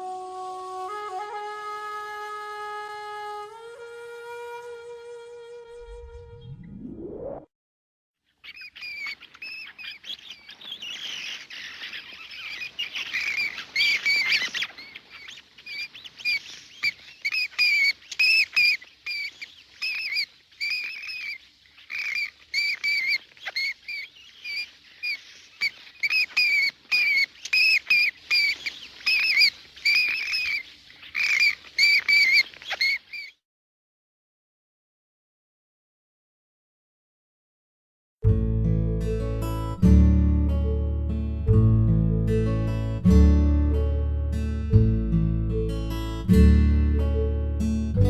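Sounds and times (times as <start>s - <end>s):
bats screeching: 8.4s - 33.4s.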